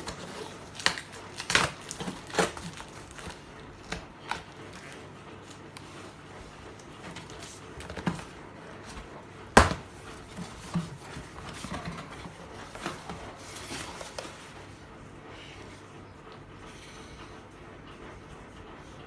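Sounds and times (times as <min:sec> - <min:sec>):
packaging rustling: 0:00.0 - 0:14.8.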